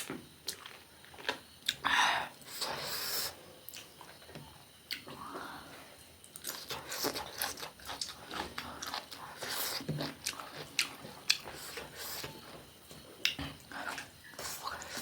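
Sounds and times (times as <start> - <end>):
person chewing crunchy food: 0.0 - 1.8, 6.2 - 15.0.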